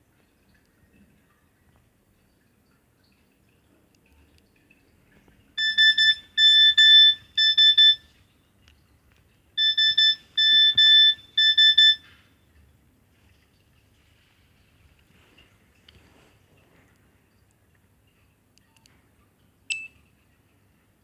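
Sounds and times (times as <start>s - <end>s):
mobile phone ringtone beeping: 5.6s - 8.0s, 9.6s - 12.0s.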